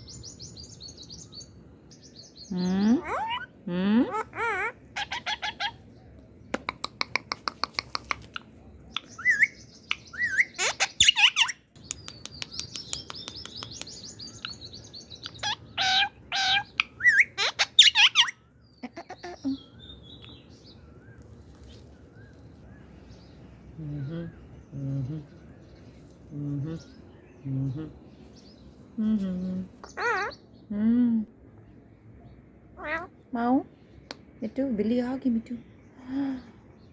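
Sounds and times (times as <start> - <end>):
parakeet squawking: 2.9 - 5.8, 9.1 - 11.7, 15.3 - 19.6, 29.8 - 30.4, 32.8 - 33.1
parakeet clicking chatter: 6.6 - 14.6.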